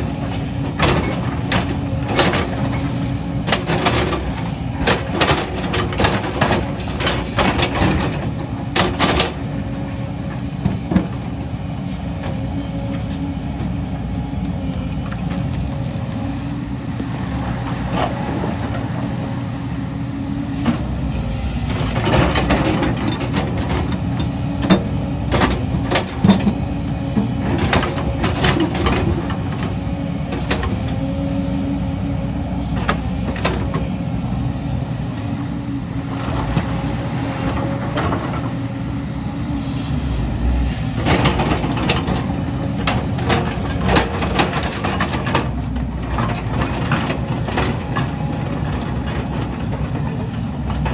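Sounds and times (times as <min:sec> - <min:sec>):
excavator diesel engine running: 0:00.0 - 0:50.9
metal clanks and knocks: 0:21.7 - 0:31.0, 0:41.0 - 0:50.9.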